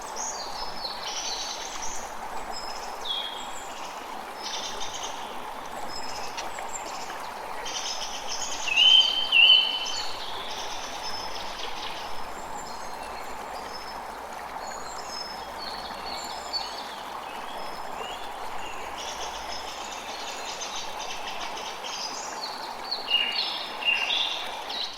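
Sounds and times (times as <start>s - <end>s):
forest birds singing and calling: 2.6s - 13.9s, 14.6s - 24.9s.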